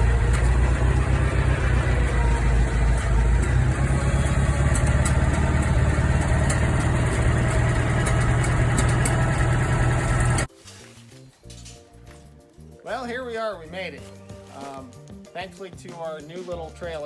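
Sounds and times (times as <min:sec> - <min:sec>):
vehicle engine idling: 0:00.0 - 0:10.5.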